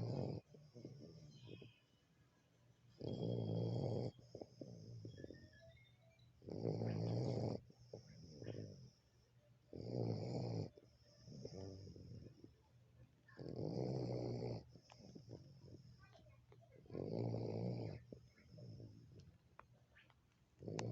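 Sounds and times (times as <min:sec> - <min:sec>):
dog snoring: 0:00.0 - 0:01.8, 0:02.9 - 0:05.5, 0:06.4 - 0:12.6, 0:13.3 - 0:16.1, 0:16.8 - 0:19.3, 0:20.6 - 0:20.9
soft dog breathing: 0:10.3 - 0:13.4, 0:14.3 - 0:16.4.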